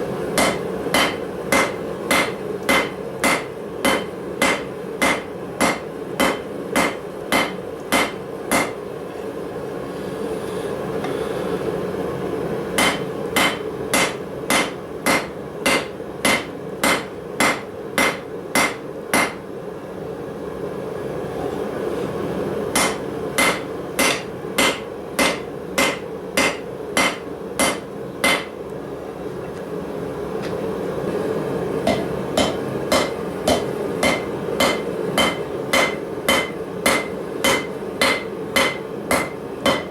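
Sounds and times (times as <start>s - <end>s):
steady background noise: 0.0s - 39.9s
hammer striking steel on anvil: 0.4s - 8.8s, 12.8s - 19.4s, 22.8s - 28.6s, 31.9s - 39.9s.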